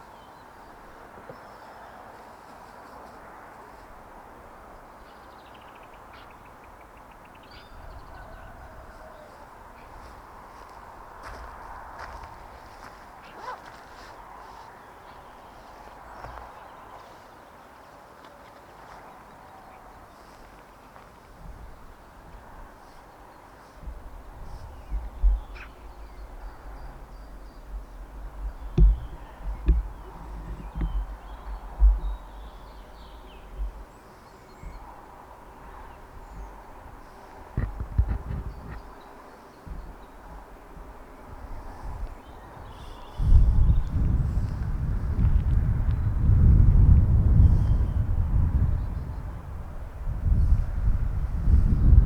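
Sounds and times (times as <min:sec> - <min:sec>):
wind rumble on microphone: 0:00.0 - 0:18.0, 0:18.8 - 0:52.0
wind gusts thumping: 0:23.8 - 0:34.0, 0:34.6 - 0:52.0.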